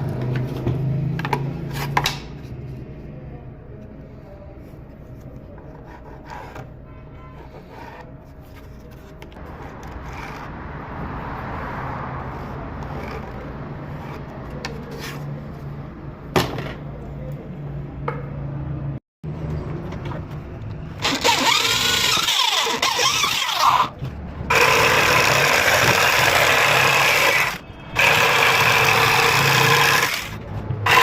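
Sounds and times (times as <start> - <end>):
power tool motor hum on wood: 21.0 - 23.9, 24.5 - 31.0.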